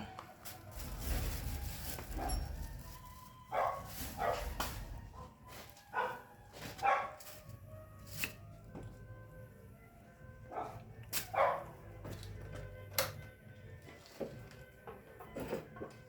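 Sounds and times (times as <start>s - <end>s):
dog barking: 3.5s - 4.5s, 5.9s - 7.2s, 10.5s - 11.8s.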